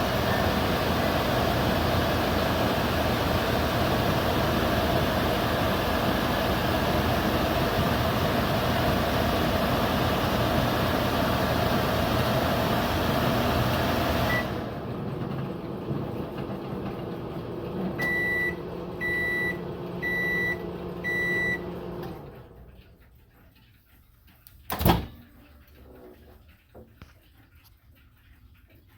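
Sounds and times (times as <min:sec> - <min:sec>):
microwave beeps: 0:00.0 - 0:14.8, 0:17.9 - 0:22.3
microwave oven running: 0:00.0 - 0:23.1.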